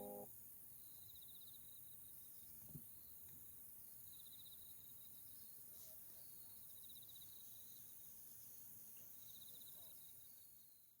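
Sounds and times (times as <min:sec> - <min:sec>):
high-pitched drone: 0:00.0 - 0:00.3
insect chirping trills: 0:00.0 - 0:05.6, 0:06.4 - 0:11.0.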